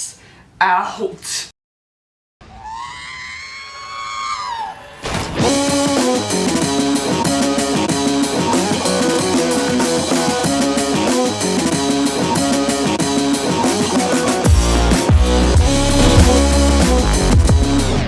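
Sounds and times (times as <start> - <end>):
rock music with guitar and drums: 5.4 - 18.0
heavy bass: 14.6 - 18.0.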